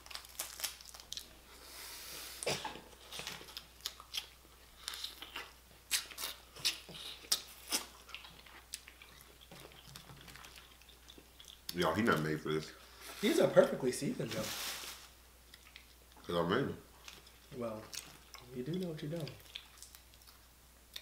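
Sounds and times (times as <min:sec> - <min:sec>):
crawfish shells cracking: 0:00.0 - 0:01.3
chewing: 0:03.0 - 0:12.8, 0:15.5 - 0:21.0.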